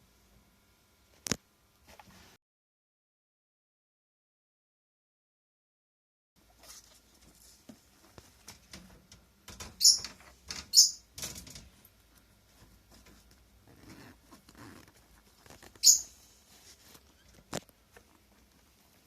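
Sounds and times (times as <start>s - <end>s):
rabbit rustling and pattering: 6.4s - 19.0s.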